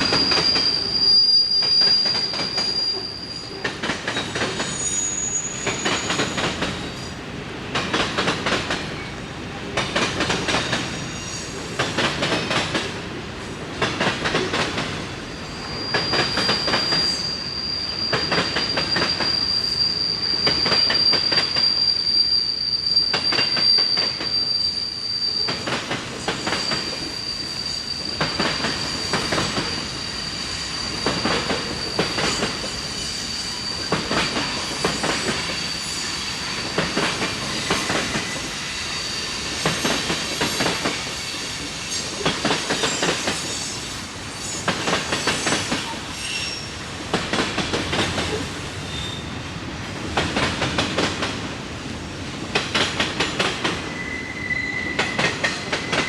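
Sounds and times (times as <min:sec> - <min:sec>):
high-pitched wheel squeal: 0:00.0 - 0:03.7, 0:04.6 - 0:06.6, 0:15.4 - 0:36.7, 0:45.2 - 0:46.8, 0:48.9 - 0:49.4, 0:53.7 - 0:56.0
railroad wheels clattering: 0:00.0 - 0:56.0.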